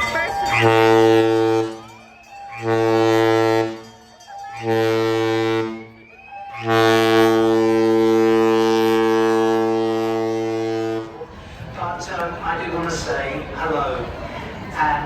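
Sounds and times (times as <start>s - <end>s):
ship horn blasts: 0.0s - 11.3s.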